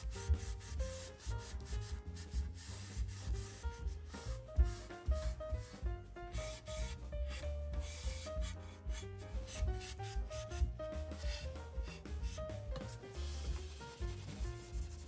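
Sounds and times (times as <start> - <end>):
background music with bass: 0.0 - 15.0
rubbing strokes on wood: 0.0 - 15.0.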